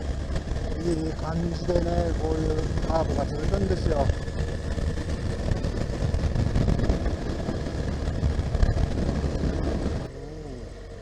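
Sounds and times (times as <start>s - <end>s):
motorcycle engine running: 0.0s - 11.0s
wind noise on microphone: 2.2s - 10.1s.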